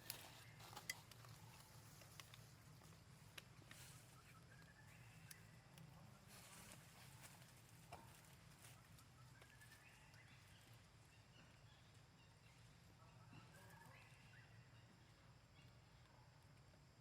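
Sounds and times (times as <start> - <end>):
faint high chirping calls: 0.0 - 16.3.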